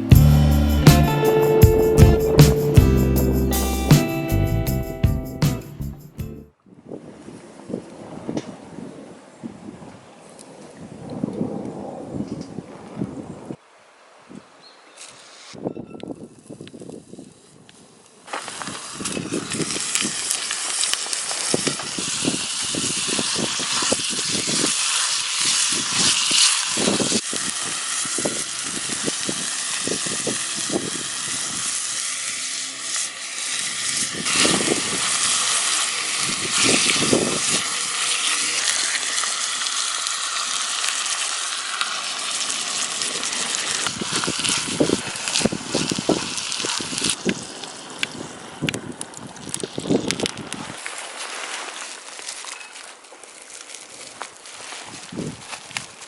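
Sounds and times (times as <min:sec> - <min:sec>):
food sizzling in a tin: 0:18.3 - 0:54.8.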